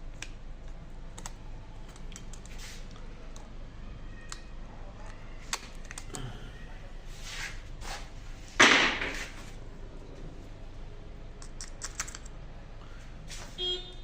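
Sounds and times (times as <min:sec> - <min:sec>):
small plastic clicks: 0:00.2 - 0:03.5, 0:04.2 - 0:06.2.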